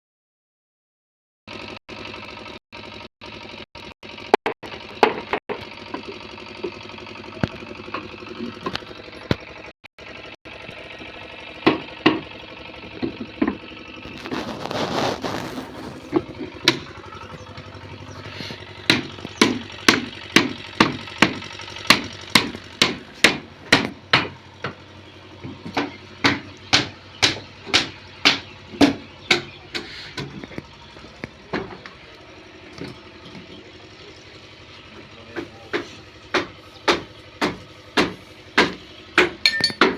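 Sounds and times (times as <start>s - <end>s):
engine hum: 1.5s - 39.9s
hammer strikes: 18.9s - 24.8s, 25.4s - 30.4s, 35.4s - 39.9s.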